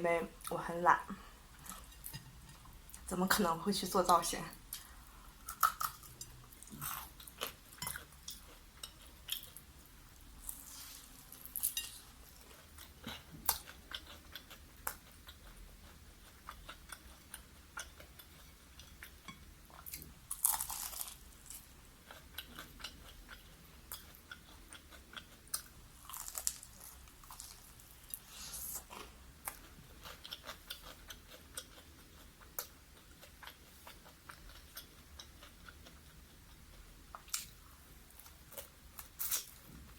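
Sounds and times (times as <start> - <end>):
crunching fried chicken: 19.9 - 31.9.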